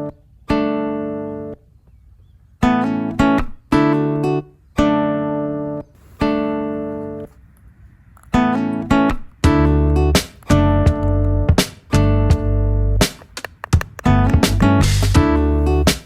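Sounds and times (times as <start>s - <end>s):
acoustic guitar chords ringing: 2.6s - 7.3s, 8.3s - 13.0s, 14.1s - 16.0s.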